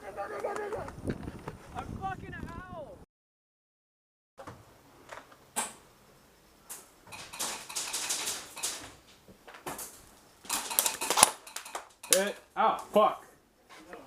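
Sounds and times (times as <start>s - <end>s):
airsoft gun firing: 10.5s - 12.3s.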